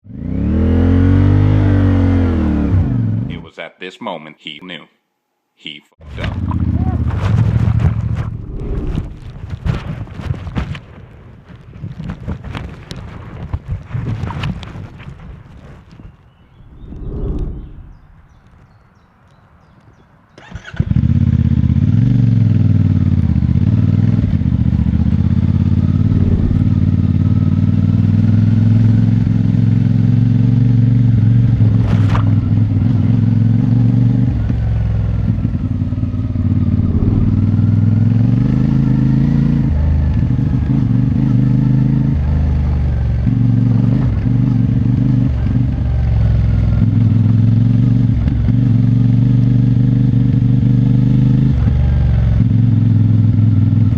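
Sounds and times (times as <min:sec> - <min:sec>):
motorcycle engine running: 0:06.2 - 0:09.6, 0:20.5 - 0:53.9.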